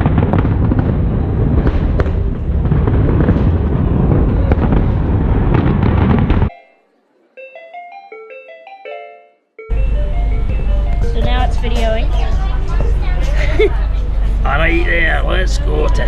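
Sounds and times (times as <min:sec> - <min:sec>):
fireworks crackling and booming: 0:00.0 - 0:06.6.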